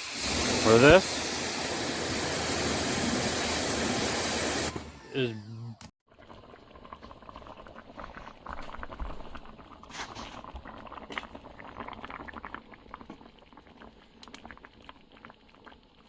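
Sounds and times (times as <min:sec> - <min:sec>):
pressure washer spraying wood: 0:00.0 - 0:04.9.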